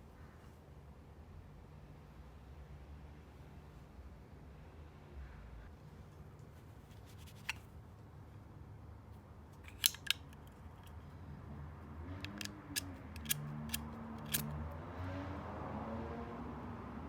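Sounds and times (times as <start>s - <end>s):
lighter lid clicking: 9.8s - 10.2s, 13.2s - 13.4s, 14.2s - 14.4s.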